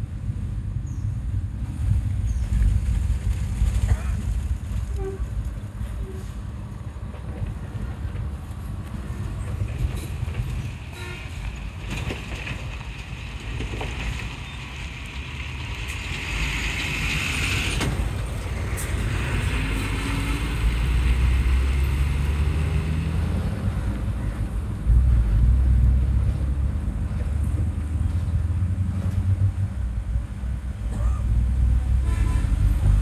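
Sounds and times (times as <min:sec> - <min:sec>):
bus diesel engine revving: 0:15.6 - 0:24.1.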